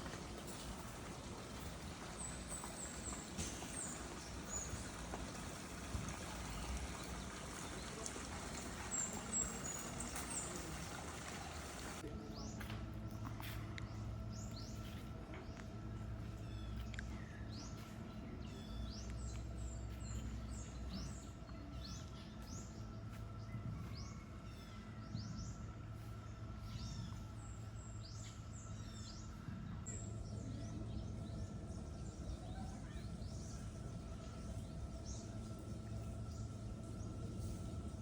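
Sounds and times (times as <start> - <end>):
birds chirping: 0.0 - 38.0
steady low rumble: 0.0 - 38.0.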